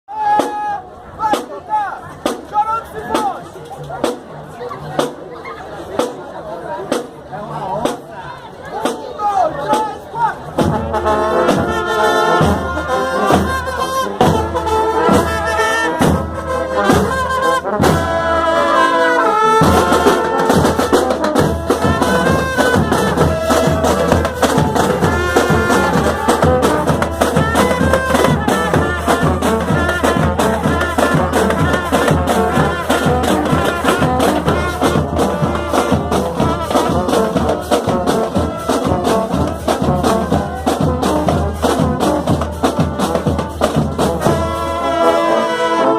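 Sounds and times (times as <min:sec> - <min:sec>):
drum line: 0:00.2 - 0:08.1, 0:08.7 - 0:18.6, 0:19.4 - 0:45.2
trumpets and trombones: 0:09.6 - 0:45.9.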